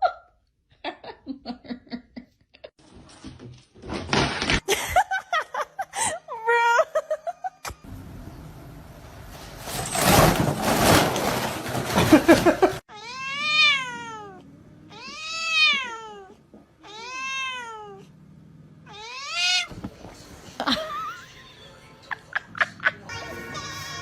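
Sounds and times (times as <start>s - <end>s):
cat meowing: 12.9s - 18.0s, 18.9s - 19.7s.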